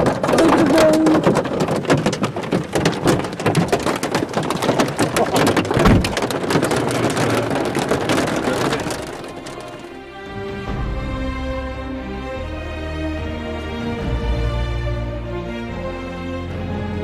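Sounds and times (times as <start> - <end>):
heavy rain: 0.0 - 17.0
low thud: 5.8 - 6.2.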